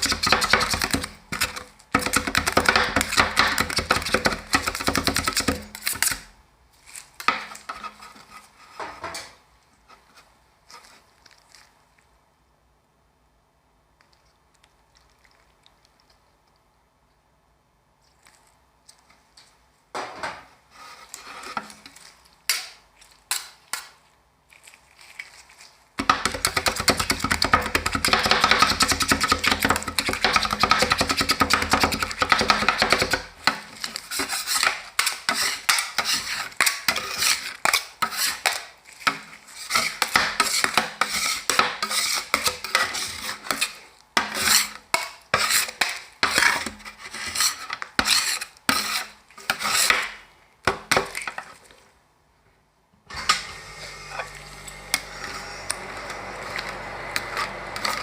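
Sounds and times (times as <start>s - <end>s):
metal spatulas chopping on steel: 26.0s - 46.7s.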